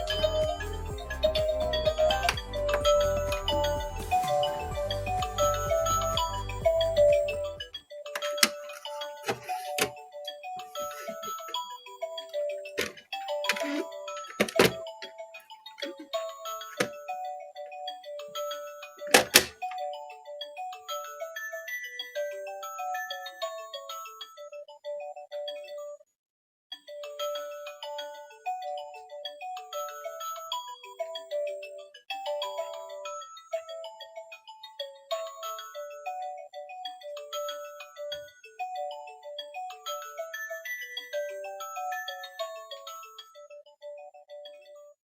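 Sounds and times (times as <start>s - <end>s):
tinny electronic beep melody: 0.0s - 20.3s.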